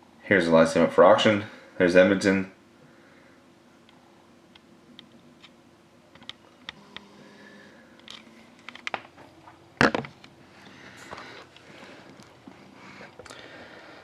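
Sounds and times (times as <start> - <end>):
sharp knock: 9.8 - 10.0.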